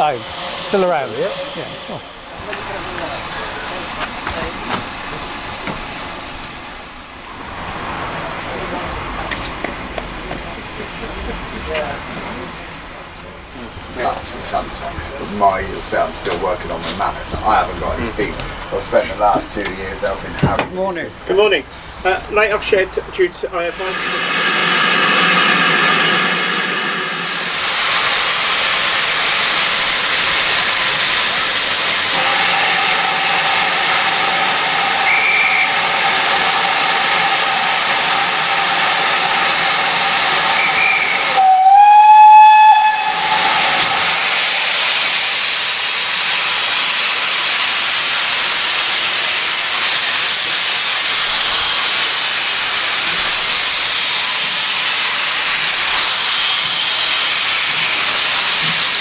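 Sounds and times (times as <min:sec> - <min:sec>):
steam hissing: 0:00.0 - 0:20.6, 0:21.4 - 0:59.0
steam whistle blast: 0:32.0 - 0:45.7.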